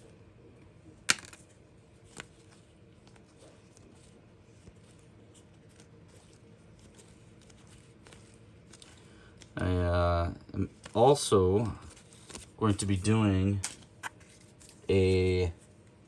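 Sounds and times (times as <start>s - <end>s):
cards being flipped through: 1.0s - 9.8s, 10.6s - 15.4s.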